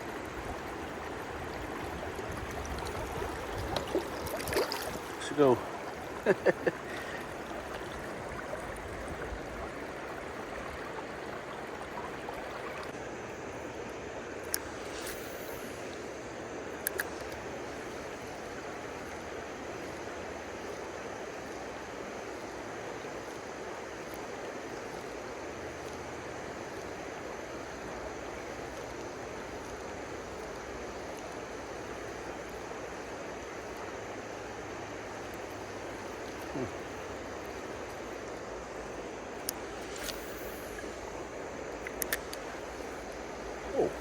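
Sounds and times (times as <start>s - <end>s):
river water rushing: 0.0s - 13.5s.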